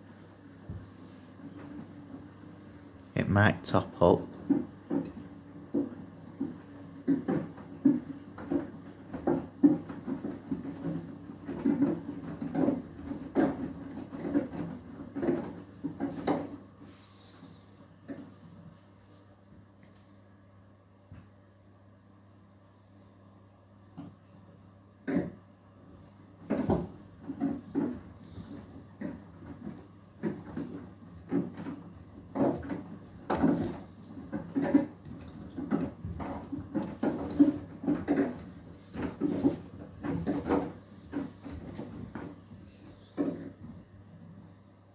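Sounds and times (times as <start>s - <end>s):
laundry tumbling in washing machine: 0.0s - 20.3s, 23.6s - 44.9s
washing machine low hum: 0.0s - 44.9s.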